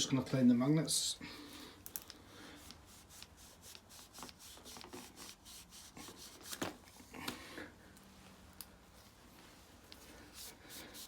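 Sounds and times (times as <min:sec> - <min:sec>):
hands rubbing magnets: 0:02.5 - 0:07.0.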